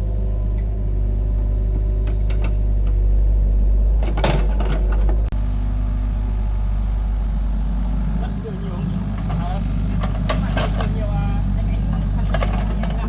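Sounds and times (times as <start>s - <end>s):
excavator diesel engine droning: 0.0s - 13.0s
clanking and scraping: 4.0s - 13.0s.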